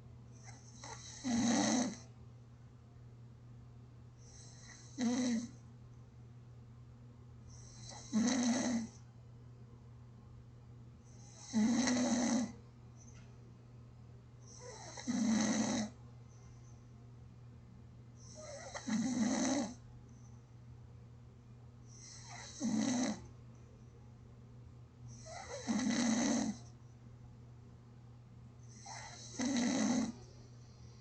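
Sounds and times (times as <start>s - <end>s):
steady low hum: 0.0s - 1.1s, 1.9s - 8.2s, 8.8s - 11.8s, 12.4s - 15.0s, 15.8s - 18.9s, 19.6s - 25.6s, 26.4s - 31.0s
person snoring: 0.5s - 2.0s, 4.3s - 5.5s, 7.6s - 9.0s, 11.2s - 12.6s, 14.5s - 16.0s, 18.3s - 19.8s, 22.0s - 23.2s, 25.2s - 26.6s, 28.7s - 30.2s
quiet breathing: 15.8s - 17.1s, 19.7s - 20.8s, 28.6s - 31.0s.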